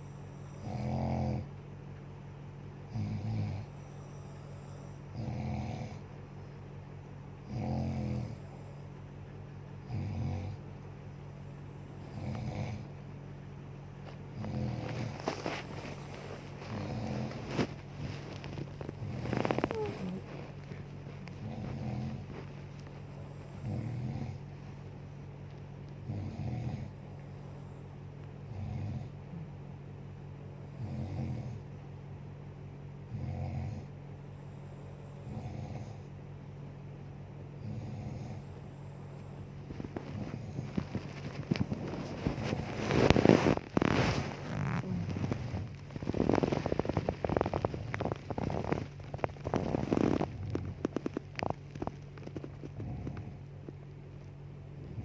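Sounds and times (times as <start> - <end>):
woman snoring: 0.0 - 1.5, 2.9 - 6.0, 7.5 - 8.8, 9.8 - 10.6, 12.0 - 12.9, 14.3 - 24.4, 26.0 - 27.0, 28.5 - 29.6, 30.7 - 31.6, 35.1 - 36.1, 37.6 - 39.0, 40.0 - 53.4
steady low hum: 0.0 - 55.0.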